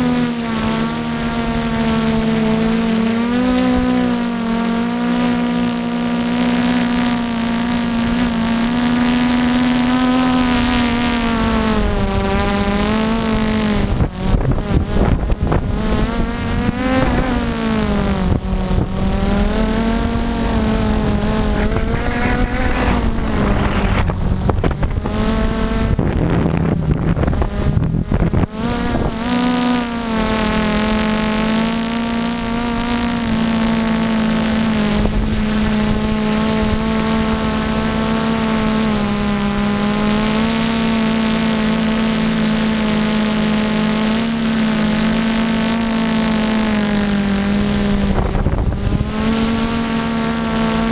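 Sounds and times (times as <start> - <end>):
drone motors humming: 0.0 - 50.9
wind buffeting microphone: 8.1 - 31.4, 32.4 - 41.5, 47.0 - 50.9.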